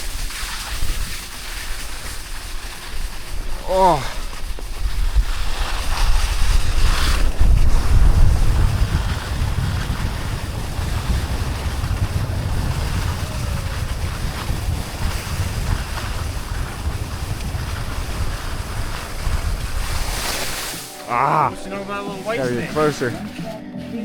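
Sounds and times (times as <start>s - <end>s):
wind buffeting microphone: 3.1s - 20.7s.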